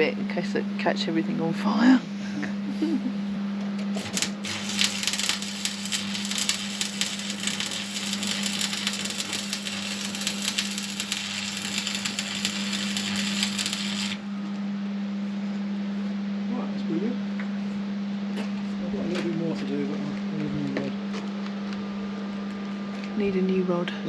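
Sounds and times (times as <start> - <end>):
welding arc crackling: 3.9 - 14.3
low hum: 4.0 - 15.2.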